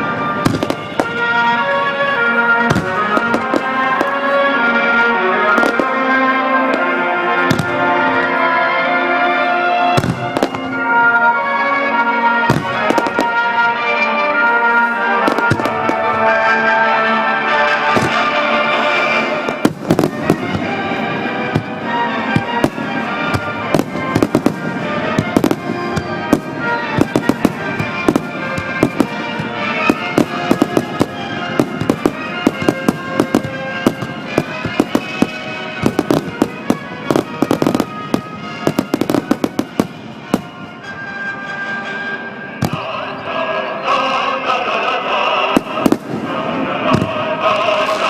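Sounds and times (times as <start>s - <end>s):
fireworks bangs: 0.0s - 8.6s, 9.7s - 41.2s, 42.5s - 43.2s, 45.4s - 48.0s
music on loudspeakers: 0.0s - 48.0s.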